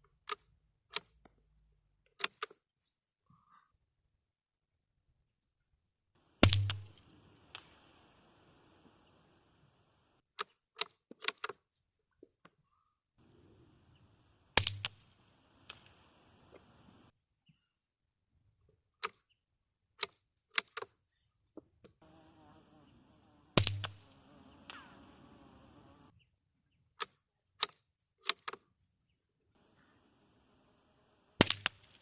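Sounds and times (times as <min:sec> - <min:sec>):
rifle bolt clicks: 0:02.1 - 0:02.6, 0:27.0 - 0:28.6
muffled gunshot: 0:06.4 - 0:07.8, 0:23.5 - 0:25.4.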